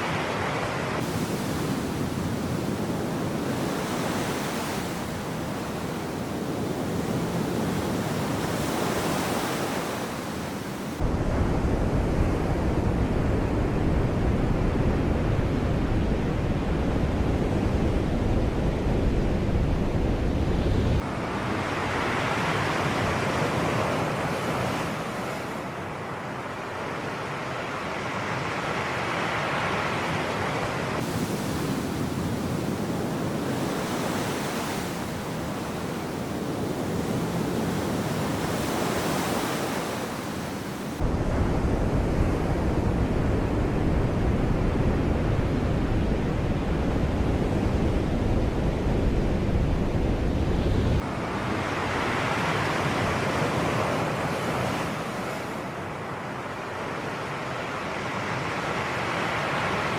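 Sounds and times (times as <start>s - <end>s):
sea waves washing: 0.0s - 11.1s, 28.8s - 59.9s
wind rumble on microphone: 0.0s - 25.4s, 30.4s - 55.7s.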